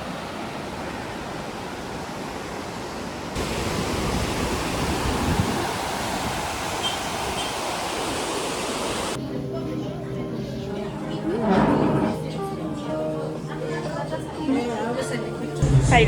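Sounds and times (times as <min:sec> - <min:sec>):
fast-flowing river rushing: 0:00.0 - 0:09.2.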